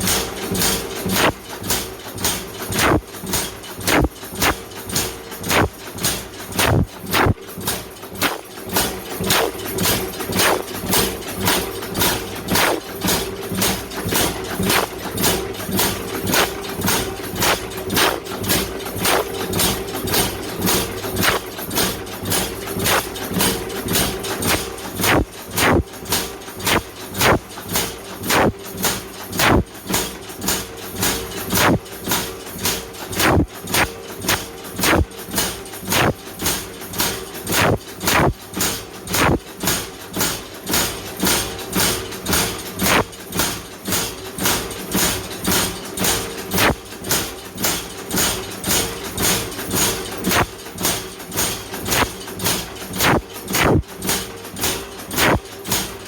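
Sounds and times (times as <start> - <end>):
hammer striking hot iron: 1.1 - 4.6, 5.5 - 8.5, 9.3 - 10.8, 26.6 - 27.4, 28.3 - 28.6, 31.6 - 31.8, 36.0 - 36.2, 37.5 - 38.4, 39.2 - 39.4, 46.6 - 46.8, 53.0 - 53.8, 55.2 - 55.4
constant hum: 2.7 - 4.6, 5.4 - 8.5, 9.2 - 11.0, 17.4 - 21.4, 24.3 - 26.0, 26.6 - 27.4, 28.2 - 28.6, 29.3 - 29.7, 31.6 - 31.8, 33.2 - 33.9, 34.8 - 35.1, 36.0 - 36.2, 37.5 - 38.4, 39.2 - 39.4, 53.0 - 53.8.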